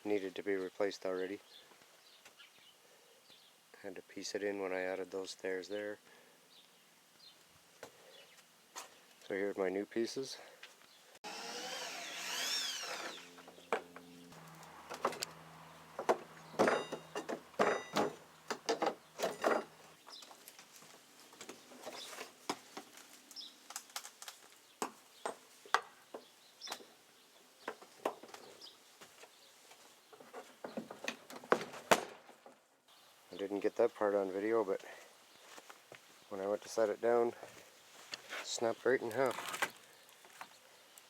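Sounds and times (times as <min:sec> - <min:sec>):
birds chirping: 0:11.8 - 0:20.4, 0:24.6 - 0:31.2.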